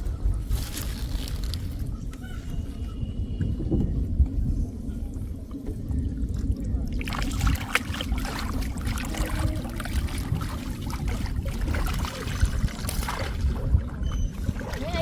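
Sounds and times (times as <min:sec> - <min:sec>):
steady low rumble: 0:00.0 - 0:15.0
water splashing and trickling: 0:05.0 - 0:15.0.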